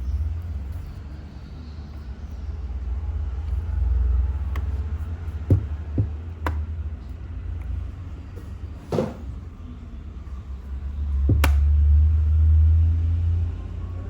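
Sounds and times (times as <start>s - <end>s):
light clicks and knocks: 4.5s - 6.7s.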